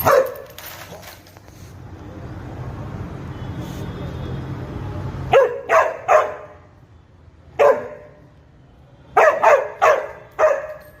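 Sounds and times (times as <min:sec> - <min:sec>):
dog barking: 0:00.0 - 0:00.5, 0:05.3 - 0:06.6, 0:07.6 - 0:08.2, 0:09.2 - 0:10.9.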